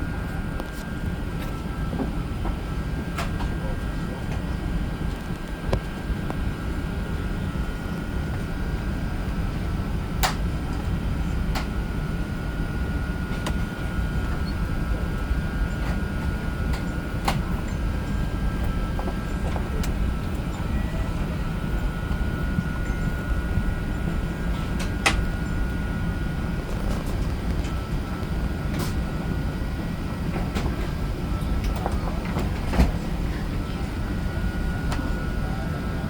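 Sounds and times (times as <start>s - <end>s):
air-conditioning rumble: 0.0s - 36.0s.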